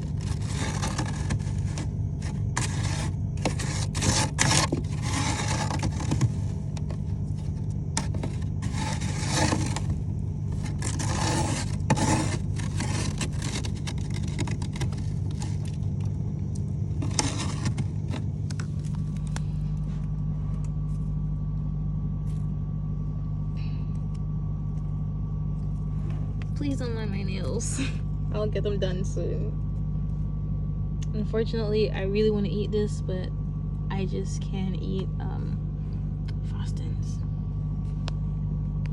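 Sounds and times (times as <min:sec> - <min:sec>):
scraping frost from freezer: 0:00.0 - 0:21.2
steady low hum: 0:00.0 - 0:38.9.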